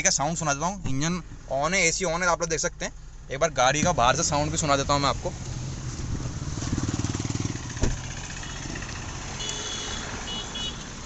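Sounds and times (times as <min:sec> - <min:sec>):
diesel engine idling: 0:00.0 - 0:11.0
car door shutting: 0:03.7 - 0:04.1, 0:07.7 - 0:08.1.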